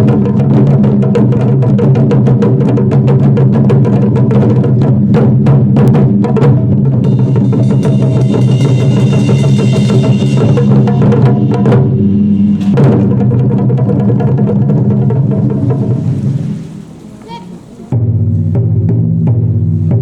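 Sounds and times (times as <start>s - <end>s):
taiko drums booming: 0.0s - 20.0s
ringing metallic shimmer: 7.1s - 11.5s.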